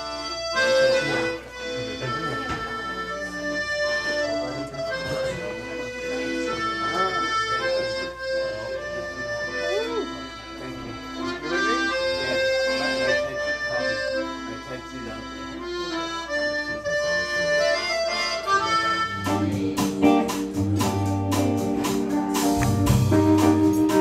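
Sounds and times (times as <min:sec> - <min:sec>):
melody of held notes: 0:00.0 - 0:24.0
bass: 0:15.0 - 0:24.0
steady drum beat: 0:19.1 - 0:24.0.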